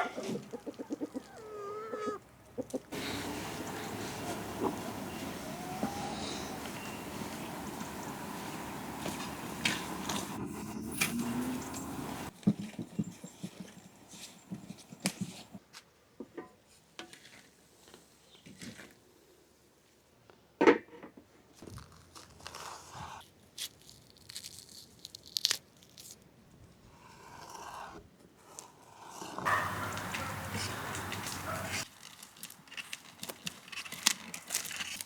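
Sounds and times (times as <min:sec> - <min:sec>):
crunching and tearing: 0:23.6 - 0:26.2, 0:31.9 - 0:35.0.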